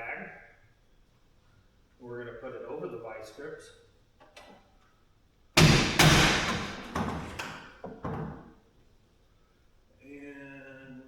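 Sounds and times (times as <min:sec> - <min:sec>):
knocks and rattles on steel track: 0:05.6 - 0:08.5.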